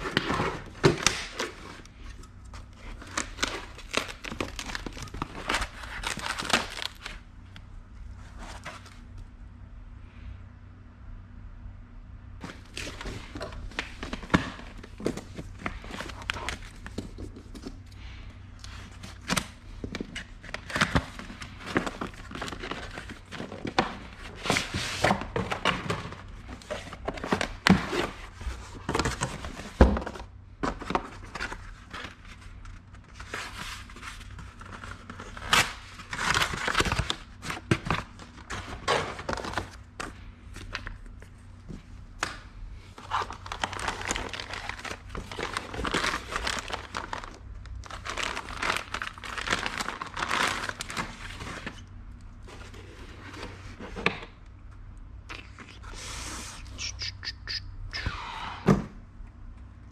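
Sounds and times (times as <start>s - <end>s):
packaging thuds: 0.0s - 1.8s, 2.7s - 7.2s, 43.1s - 51.6s
plastic and paper crinkling: 0.0s - 7.2s, 12.4s - 54.1s.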